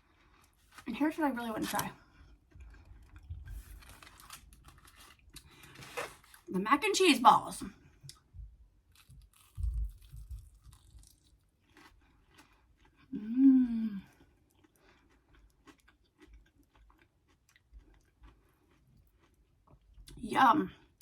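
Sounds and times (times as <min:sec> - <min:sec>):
person chewing crunchy food: 0:01.6 - 0:06.5, 0:07.9 - 0:13.2, 0:14.0 - 0:20.2
person humming mmm: 0:13.1 - 0:14.1.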